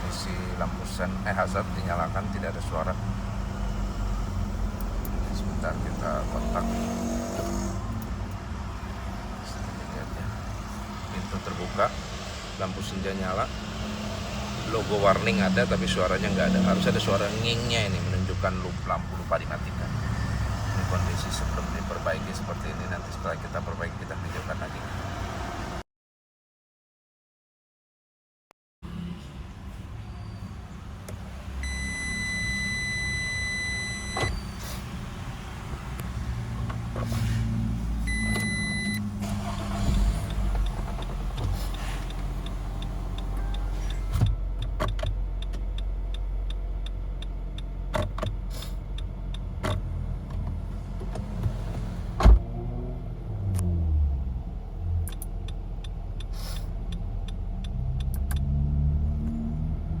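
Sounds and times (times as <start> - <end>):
low car rumble: 0.0 - 25.8, 28.8 - 60.0
electronic warning tone: 31.6 - 34.4, 38.1 - 39.0
sharp clicks: 55.0 - 58.5.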